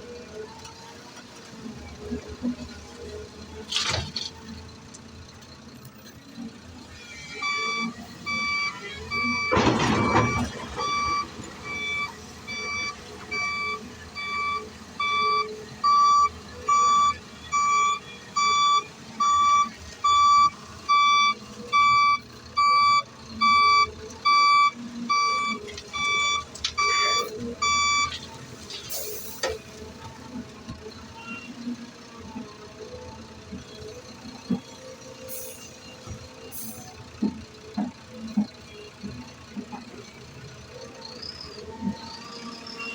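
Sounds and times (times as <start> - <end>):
reversing alarm beeping: 7.2 - 28.2.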